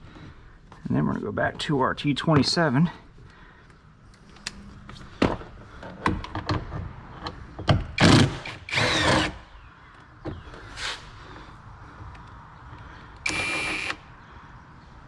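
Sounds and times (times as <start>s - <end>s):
cordless driver spinning: 13.2s - 14.0s.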